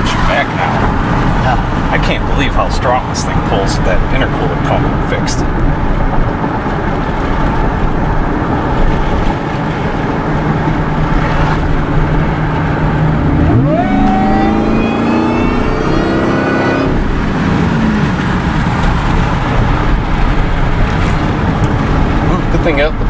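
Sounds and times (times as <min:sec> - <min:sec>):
road noise: 0:00.0 - 0:23.0
engine revving at full throttle: 0:08.8 - 0:22.9.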